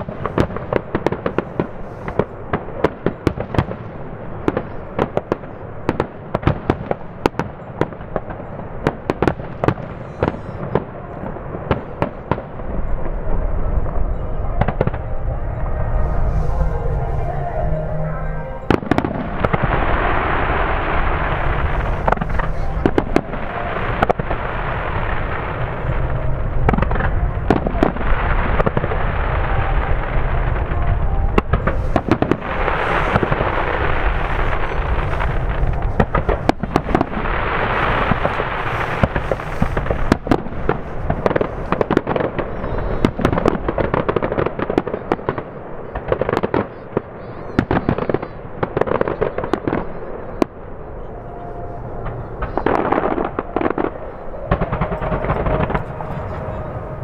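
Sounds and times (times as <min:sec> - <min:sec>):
firework crackling: 0:12.4 - 0:45.4, 0:48.6 - 0:57.0
firework shells bursting: 0:18.7 - 0:28.0, 0:29.4 - 0:42.4
steady rumble: 0:20.6 - 0:41.8.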